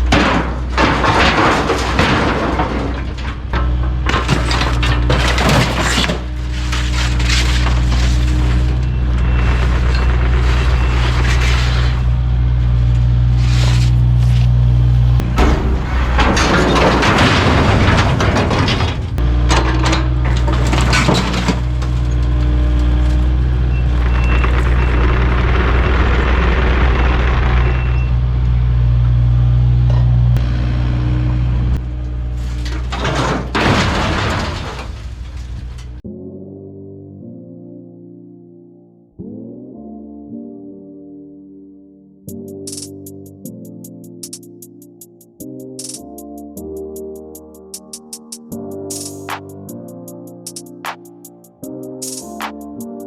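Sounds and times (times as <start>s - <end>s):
excavator diesel engine running: 0.0s - 36.0s.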